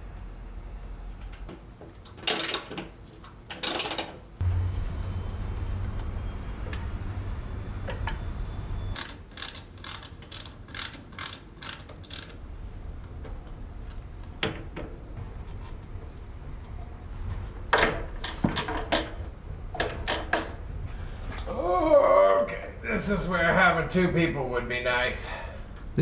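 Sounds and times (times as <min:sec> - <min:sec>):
low hum: 0:04.4 - 0:09.0, 0:12.4 - 0:26.0.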